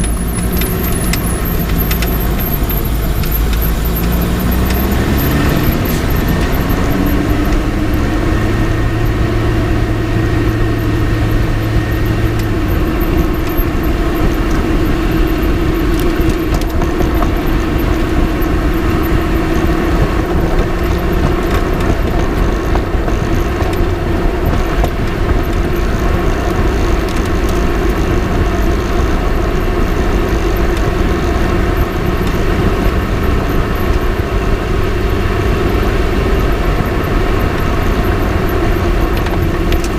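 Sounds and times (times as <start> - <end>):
faint ticks: 0.0 - 8.1
steady rising tone: 0.0 - 20.0
car engine drone: 0.0 - 39.9
road and tyre noise: 0.0 - 39.9.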